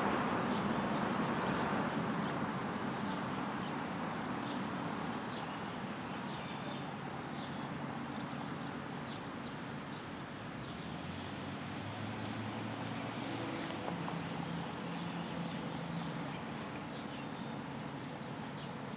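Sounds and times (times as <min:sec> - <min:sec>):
small birds chirping: 0:04.8 - 0:18.9.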